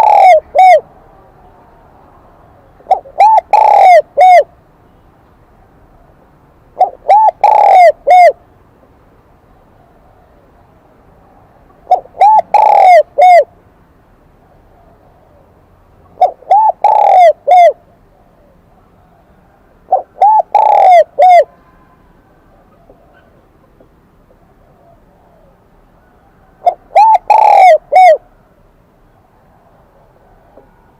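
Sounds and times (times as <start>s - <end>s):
dove cooing: 0.0s - 1.0s, 2.5s - 4.6s, 6.8s - 8.4s, 11.6s - 13.6s, 14.4s - 28.5s, 29.1s - 30.9s.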